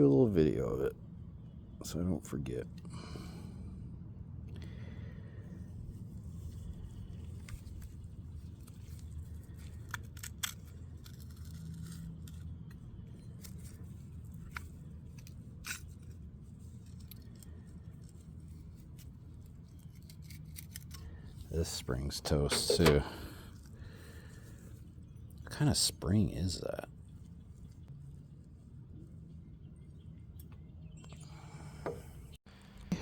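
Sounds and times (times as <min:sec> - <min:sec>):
steady low hum: 0:00.0 - 0:20.1
metal clicks and scrapes: 0:08.5 - 0:16.2, 0:19.0 - 0:23.7.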